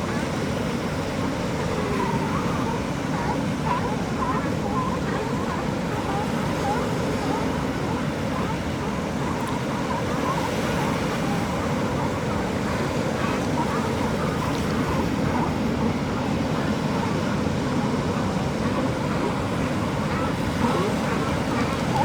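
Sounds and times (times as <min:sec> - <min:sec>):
ocean surf: 0:00.0 - 0:22.0
wind: 0:00.0 - 0:22.0.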